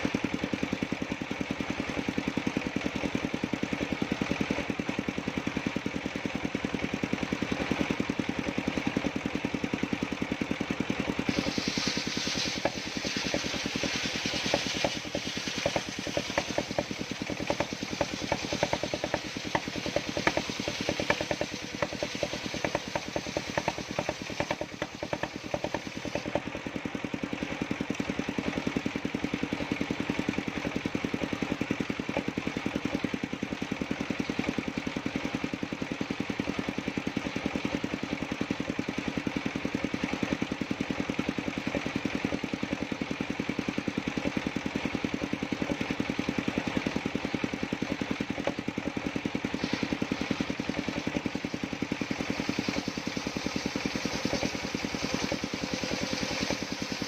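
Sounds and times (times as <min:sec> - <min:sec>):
sawmill engine running: 0:00.0 - 0:57.0
saw blade cutting wood: 0:11.0 - 0:26.6, 0:44.2 - 0:57.0.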